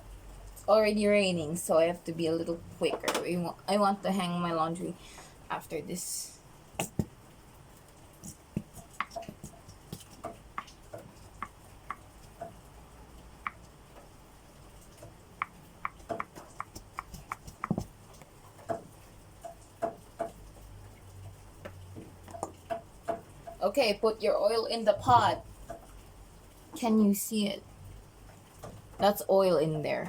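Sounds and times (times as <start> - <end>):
low steady hum: 0.0 - 30.0
faint taps and clicks: 6.8 - 7.2, 7.8 - 12.6, 14.8 - 20.7, 21.6 - 23.6.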